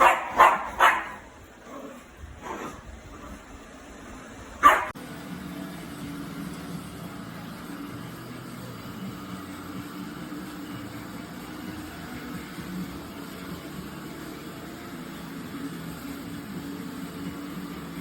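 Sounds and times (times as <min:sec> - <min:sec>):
dog barking: 0:00.0 - 0:01.3, 0:04.6 - 0:05.0.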